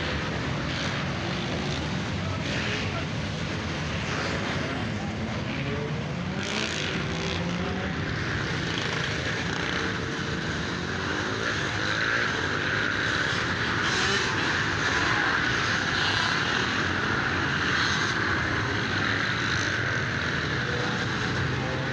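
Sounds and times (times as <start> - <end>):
dirt bike engines revving: 0.0 - 21.9.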